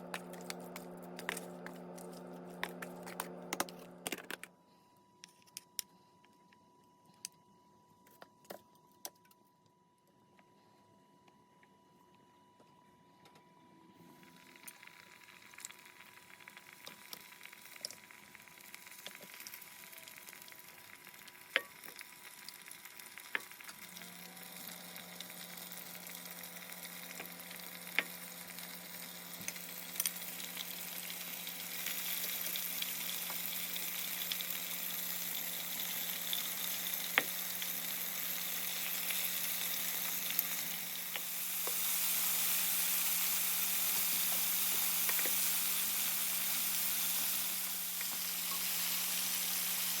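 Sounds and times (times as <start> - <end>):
food sizzling in hot oil: 14.2 - 50.0.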